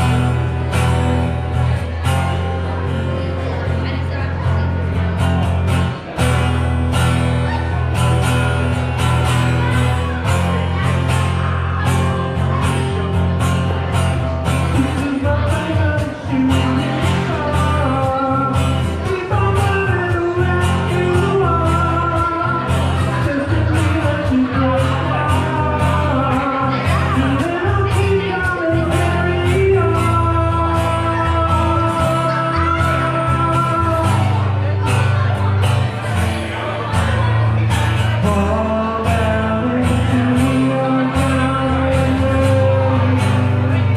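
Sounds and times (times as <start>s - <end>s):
live rock band playing: 0.0s - 43.9s
drums keeping a steady beat: 4.8s - 43.9s
lead singer singing: 14.1s - 35.5s, 36.5s - 43.9s.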